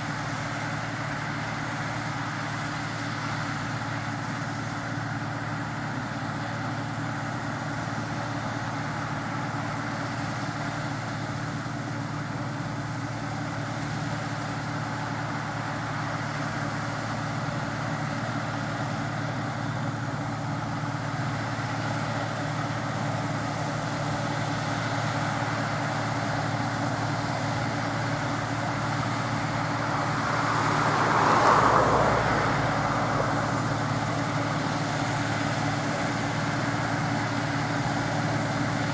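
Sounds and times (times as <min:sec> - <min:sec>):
combine harvester engine drone: 0:00.0 - 0:38.9
rushing mechanical noise: 0:25.2 - 0:38.9.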